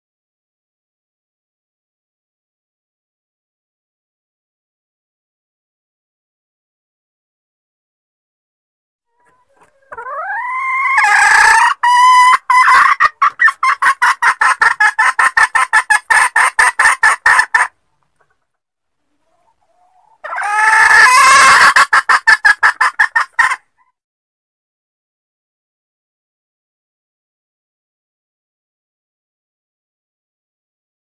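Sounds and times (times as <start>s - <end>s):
hen calling and clucking: 9.1s - 23.9s.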